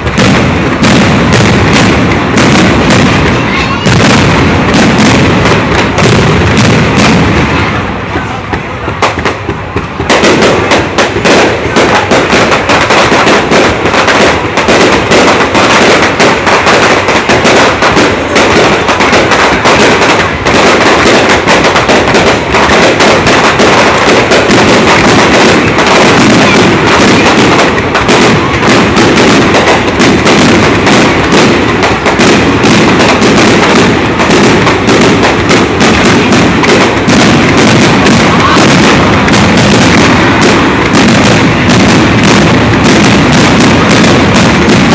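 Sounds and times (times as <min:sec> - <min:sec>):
fireworks bangs and crackling: 0:00.0 - 0:44.9.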